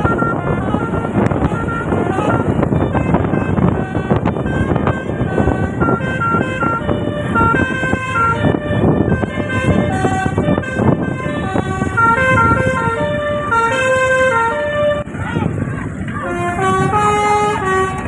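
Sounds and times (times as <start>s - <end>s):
bus air horns playing tune: 0.0s - 15.2s, 16.2s - 18.0s
engine and road noise: 0.0s - 18.0s.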